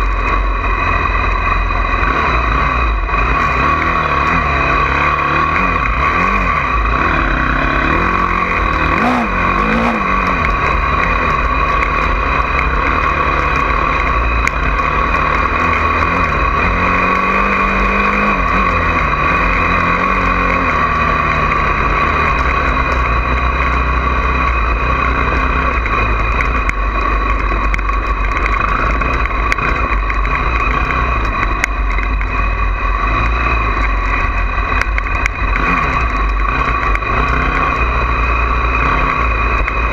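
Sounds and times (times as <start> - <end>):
loud rushing noise: 0.0 - 23.9
dirt bike engine under throttle: 0.0 - 39.9.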